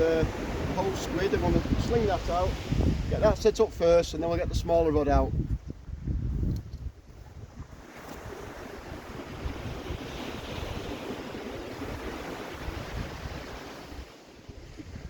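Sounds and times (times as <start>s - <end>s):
sea waves washing on shore: 0.0s - 15.0s
wind buffeting microphone: 0.0s - 15.0s.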